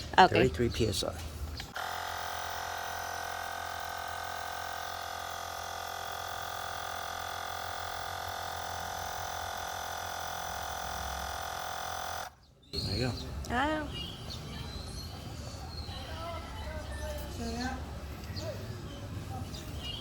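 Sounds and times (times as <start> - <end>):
air pump buzzing whine: 1.7 - 12.4.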